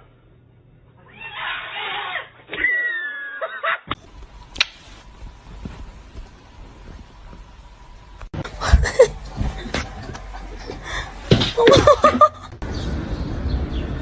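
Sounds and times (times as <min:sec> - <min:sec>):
animal high drawn-out cry: 0:01.0 - 0:03.8.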